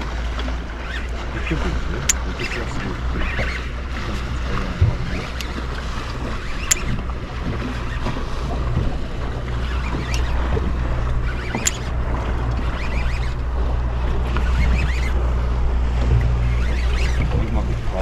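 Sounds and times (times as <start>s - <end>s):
boat engine hum: 0.0s - 18.0s
water noise: 0.0s - 18.0s
wind: 0.0s - 18.0s
sharp clicks: 2.0s - 2.3s, 6.5s - 7.0s, 11.4s - 13.3s.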